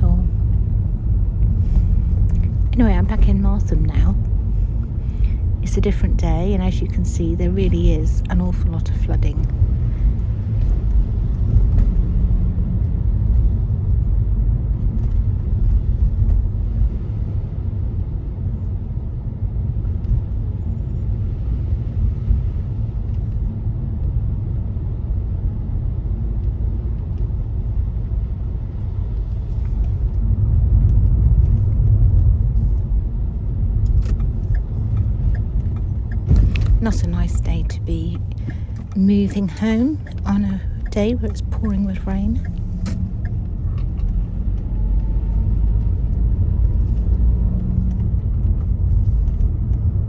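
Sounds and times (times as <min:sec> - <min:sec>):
car engine rumble: 0:00.0 - 0:50.0
road noise inside car: 0:00.0 - 0:50.0.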